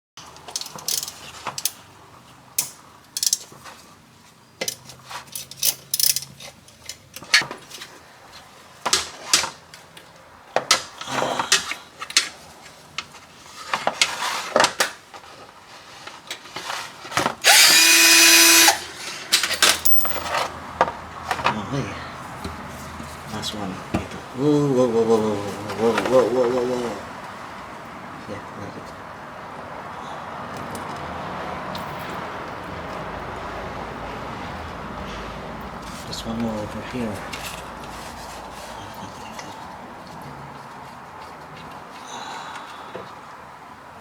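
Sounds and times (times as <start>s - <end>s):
hand tools clicking on metal: 0.3s - 1.8s, 4.6s - 7.3s
power tool whine: 17.4s - 18.9s.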